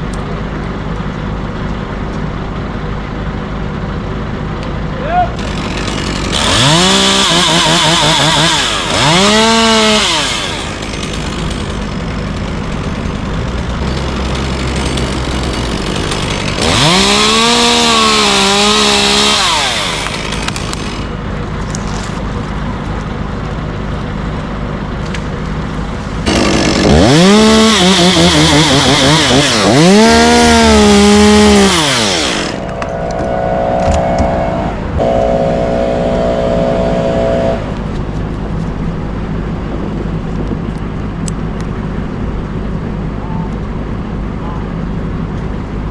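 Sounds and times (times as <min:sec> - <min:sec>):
chainsaw cutting limbs: 0:05.4 - 0:22.4, 0:25.8 - 0:32.9.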